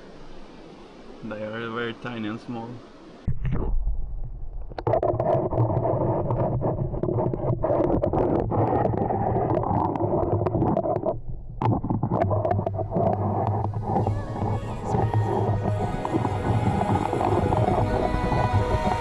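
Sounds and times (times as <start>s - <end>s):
stream water rushing and gurgling: 0.0s - 3.3s, 13.0s - 19.0s
wind rumbling on microphone: 2.8s - 19.0s.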